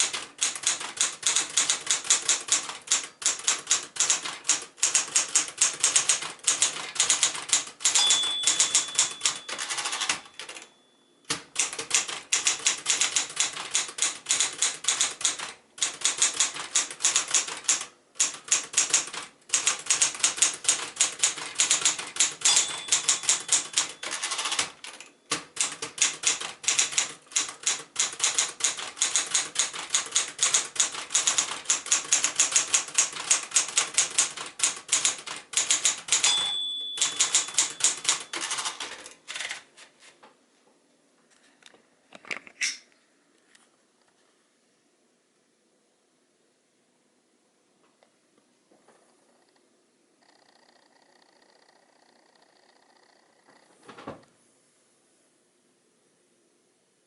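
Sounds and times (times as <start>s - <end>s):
typewriter key strikes: 0.0s - 10.7s, 11.3s - 39.6s
typewriter bell ringing: 5.0s - 13.3s, 21.3s - 25.8s, 31.2s - 39.0s.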